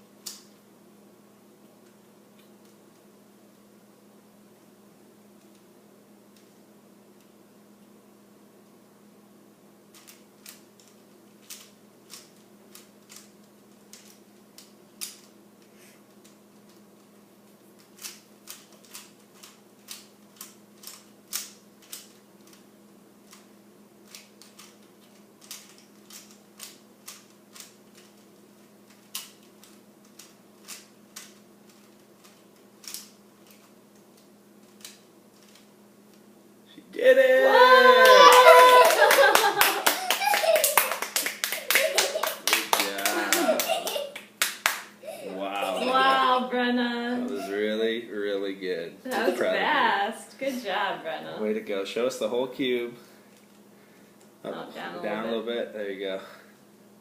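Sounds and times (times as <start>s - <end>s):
faint steady hum: 0.0s - 57.0s
plastic cube layers clicking: 23.3s - 28.3s, 28.9s - 35.7s.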